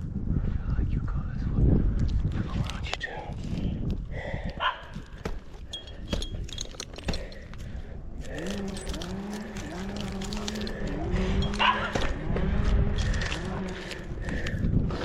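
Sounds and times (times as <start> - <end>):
metal hardware clinking: 5.5 - 11.9.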